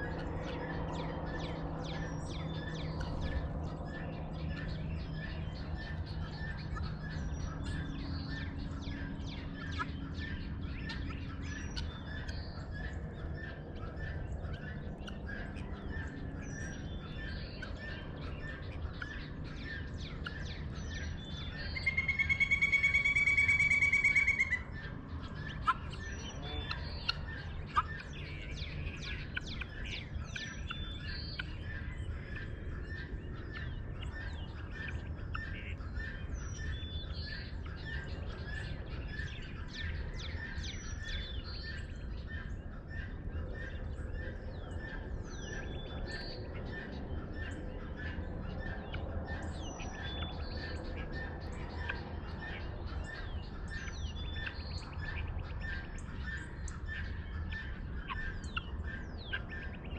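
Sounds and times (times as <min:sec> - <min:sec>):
birds chirping and calling: 0:00.0 - 0:59.9
low steady hum: 0:00.0 - 0:59.9
harsh pulsing buzzing call: 0:21.8 - 0:24.8.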